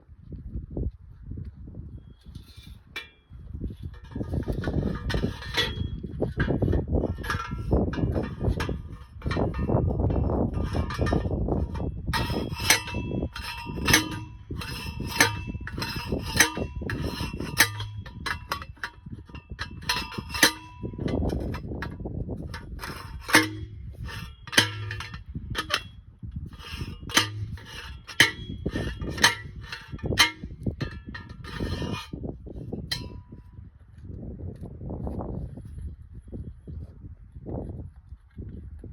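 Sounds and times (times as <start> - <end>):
post driver clanging on metal: 3.9 - 32.2, 32.8 - 33.3.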